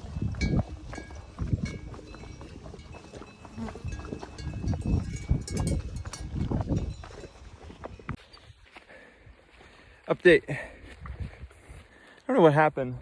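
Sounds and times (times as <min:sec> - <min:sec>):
cowbells clanking: 0:00.0 - 0:08.4.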